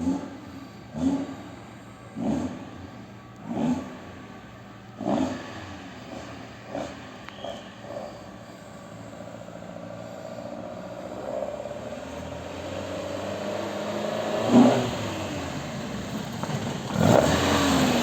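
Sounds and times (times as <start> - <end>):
car engine running: 0.0 - 13.4.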